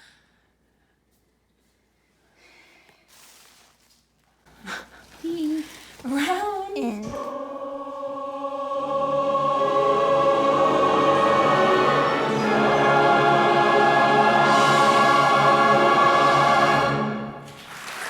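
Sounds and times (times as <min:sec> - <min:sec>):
choir singing held chords: 0:07.1 - 0:17.6.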